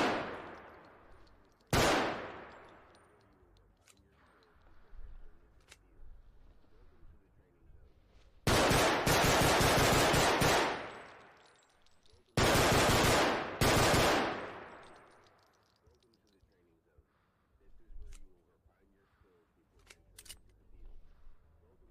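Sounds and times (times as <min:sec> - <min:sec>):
rapid loud gunfire with echo: 0:00.0 - 0:00.8, 0:01.7 - 0:02.7, 0:08.5 - 0:11.3, 0:12.4 - 0:15.0.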